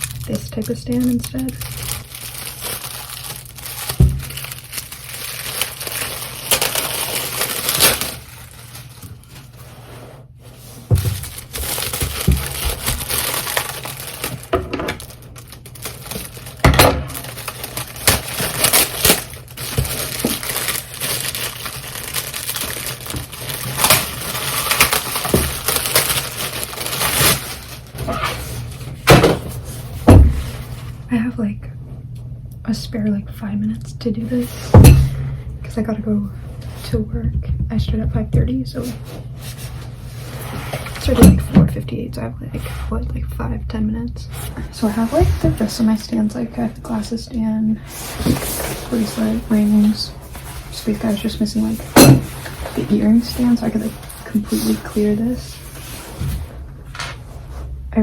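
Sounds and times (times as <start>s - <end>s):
packaging crinkling: 0.0s - 31.0s.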